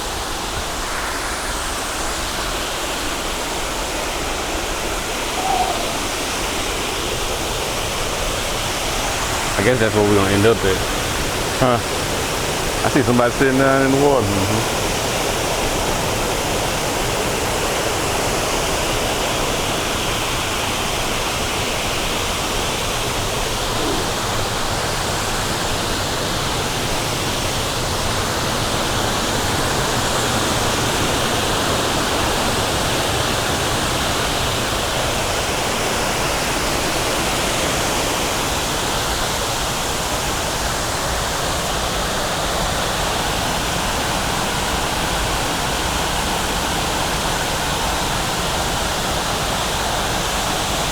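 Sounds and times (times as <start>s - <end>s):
waterfall rushing: 0.0s - 40.2s.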